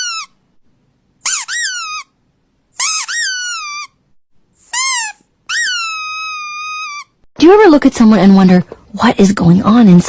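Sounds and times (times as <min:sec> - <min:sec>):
squeaky dog toy squeaking: 0:00.0 - 0:00.4, 0:01.2 - 0:04.0, 0:04.6 - 0:07.2.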